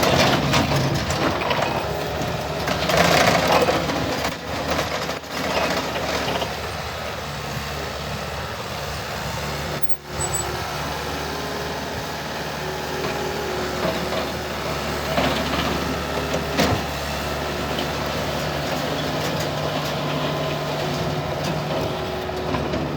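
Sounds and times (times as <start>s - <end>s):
diesel engine running: 0.0s - 22.9s.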